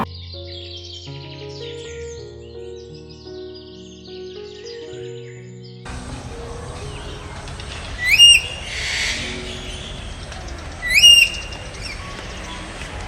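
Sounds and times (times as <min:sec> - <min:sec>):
background hiss: 0:05.9 - 0:13.0
bird calling: 0:05.9 - 0:13.0.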